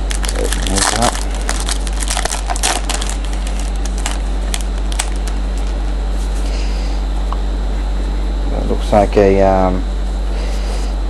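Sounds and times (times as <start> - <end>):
card pack rustling and clicking: 0.0 - 5.7
low hum: 0.0 - 11.0.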